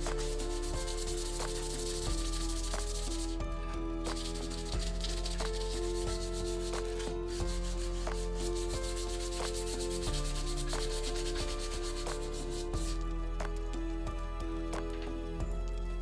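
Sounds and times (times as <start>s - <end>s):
hand sanding strokes: 0.0s - 3.4s, 4.0s - 13.0s
background music with held notes: 0.0s - 16.0s.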